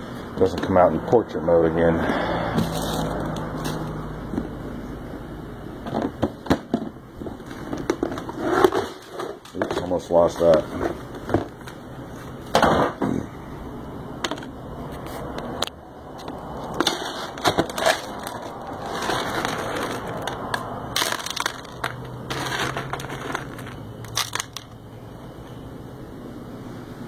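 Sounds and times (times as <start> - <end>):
crunching and clattering clicks: 5.8 - 11.8, 14.2 - 24.8.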